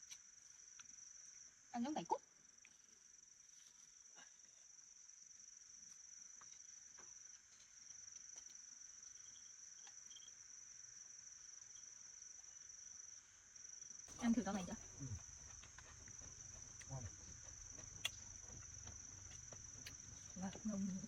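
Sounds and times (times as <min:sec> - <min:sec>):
high-pitched insect trill: 0:00.0 - 0:21.0.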